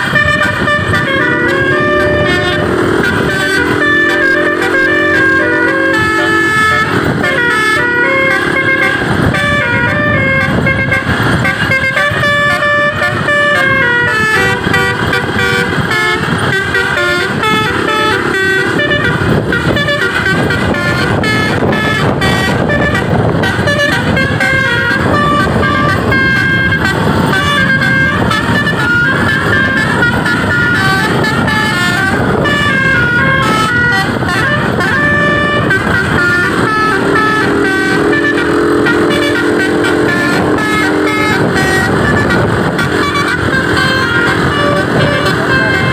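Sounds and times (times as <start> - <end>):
musical bus horn melody: 0.0 - 45.9.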